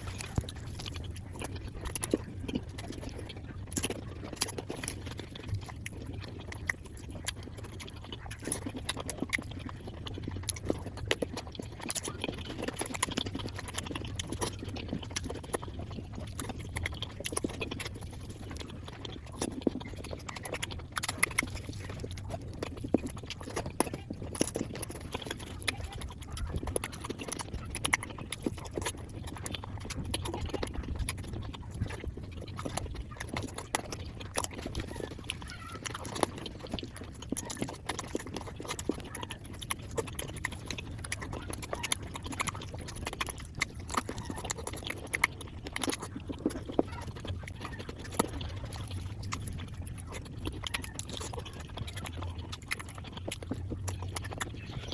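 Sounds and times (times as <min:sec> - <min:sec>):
sped-up chewing and mouth clicks: 0:00.0 - 0:54.9.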